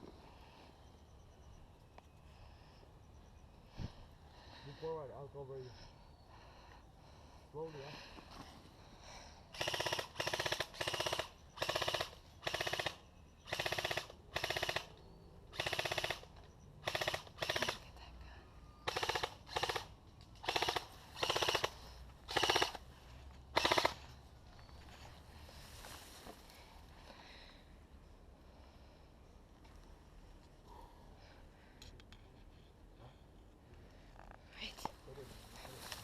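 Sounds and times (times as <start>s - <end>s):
airsoft gun bursts: 9.5s - 17.9s, 18.8s - 22.9s, 23.5s - 24.1s.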